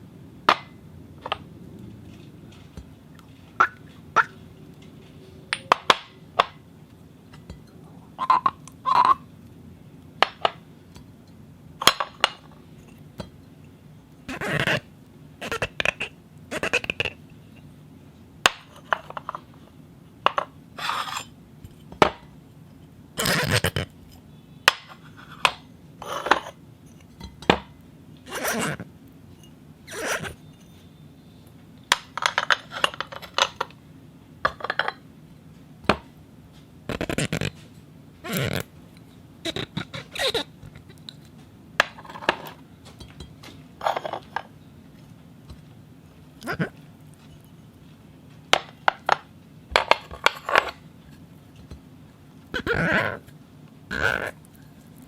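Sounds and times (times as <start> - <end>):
foley scrapes squeaks and clinks: 20.8 - 21.3, 29.4 - 31.0.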